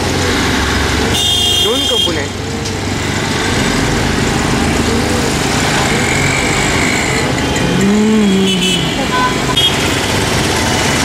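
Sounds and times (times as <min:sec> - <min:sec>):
vehicle engine running: 0:03.2 - 0:11.0.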